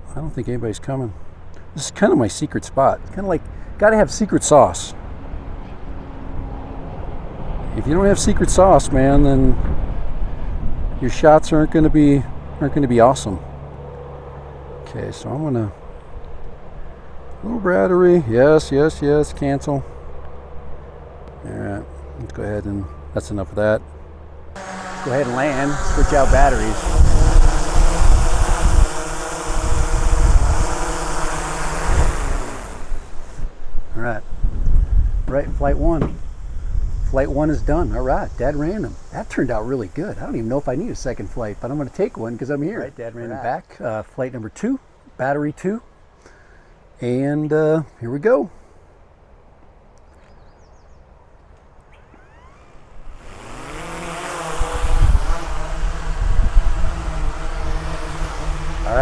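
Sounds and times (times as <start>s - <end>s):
wind rumble on microphone: 5.0s - 12.5s, 25.0s - 41.8s, 54.5s - 59.0s
drone propellers humming: 24.0s - 34.6s, 51.9s - 59.0s.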